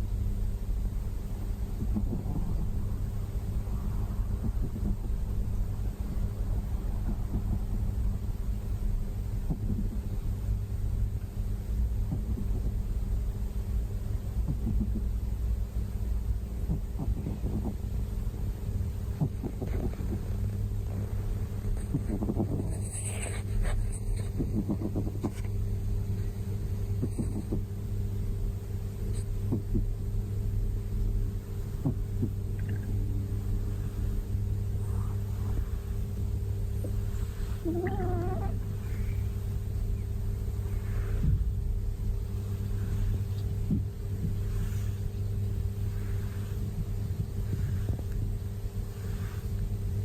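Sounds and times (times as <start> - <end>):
steady low hum: 0.0 - 50.0
cat sleepy vocalisation: 1.6 - 8.0, 9.3 - 10.1, 11.9 - 12.8, 14.3 - 15.2, 16.5 - 18.0, 18.8 - 20.4, 21.7 - 25.4, 26.9 - 27.7, 31.6 - 50.0.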